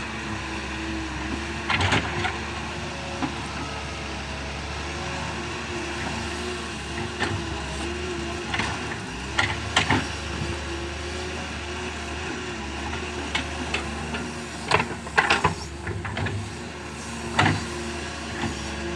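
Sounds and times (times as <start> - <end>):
excavator diesel engine running: 0.0 - 18.9
clanks and knocks of digging: 1.3 - 2.4, 6.9 - 10.5, 12.8 - 16.6, 17.2 - 18.7.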